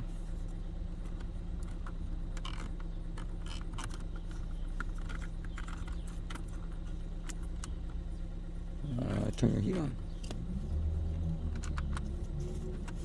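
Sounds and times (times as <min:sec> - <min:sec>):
car engine idling: 0:00.0 - 0:13.0
light clicks and rattles: 0:00.9 - 0:08.3, 0:11.0 - 0:13.0.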